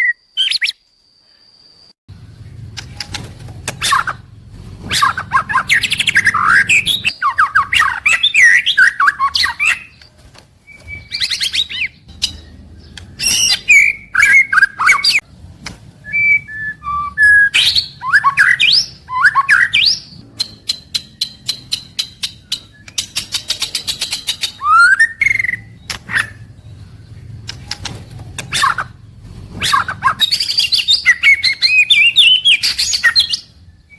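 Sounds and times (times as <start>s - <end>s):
songbird whistling song: 0.0s - 0.9s, 2.4s - 15.2s, 16.0s - 33.9s.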